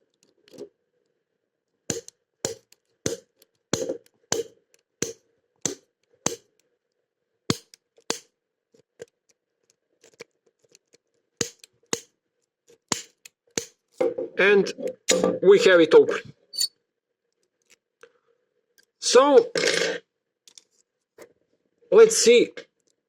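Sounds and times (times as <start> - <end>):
metallic snaps of lock pick: 10.0 - 12.1.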